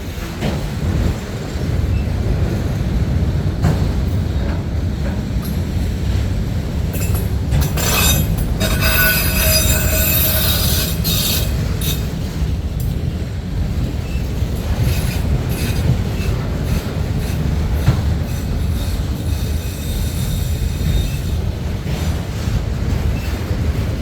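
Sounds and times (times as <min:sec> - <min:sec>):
freight train cars rumbling: 0:00.0 - 0:24.0
train wheels squealing: 0:06.9 - 0:12.3, 0:14.0 - 0:22.0, 0:23.0 - 0:23.6.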